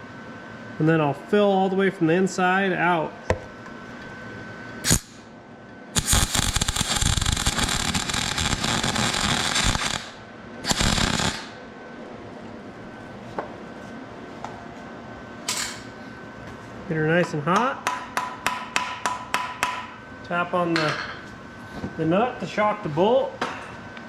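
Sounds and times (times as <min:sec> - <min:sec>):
electric arc welding: 0:04.8 - 0:05.3, 0:06.0 - 0:11.6.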